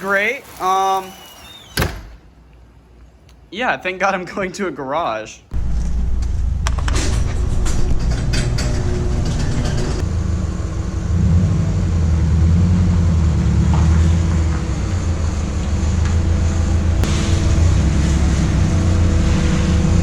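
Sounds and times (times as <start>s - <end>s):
car engine droning: 5.6s - 20.0s
road noise: 5.6s - 20.0s
hiss: 17.0s - 20.0s.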